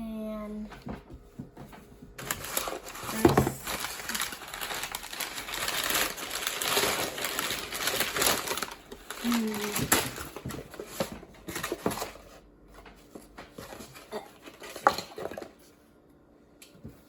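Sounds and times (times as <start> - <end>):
packaging crinkling: 2.2 - 12.4.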